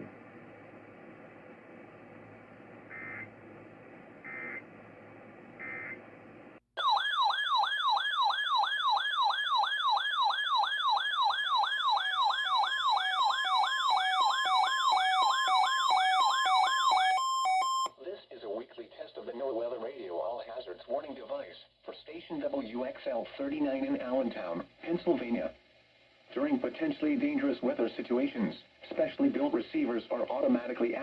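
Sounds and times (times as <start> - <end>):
radio hiss: 18.1 - 31.0.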